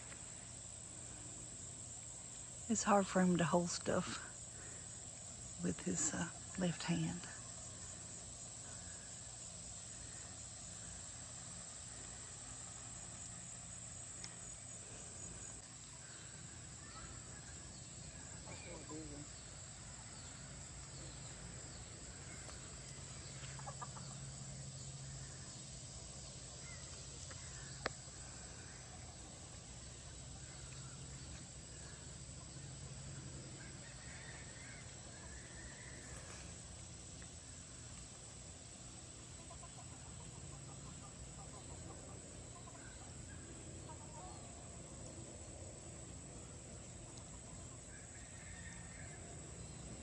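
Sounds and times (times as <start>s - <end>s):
outdoor background: 0.0s - 50.0s
chickens clucking: 22.3s - 24.3s, 39.2s - 43.2s.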